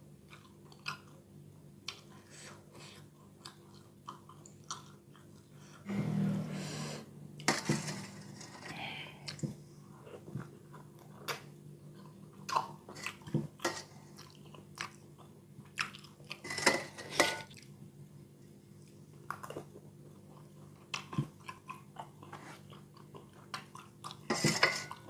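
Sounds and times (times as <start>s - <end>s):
faint steady hum: 0.0s - 25.0s
chewing and mouth noises: 0.2s - 5.8s, 9.2s - 16.4s, 18.8s - 24.3s.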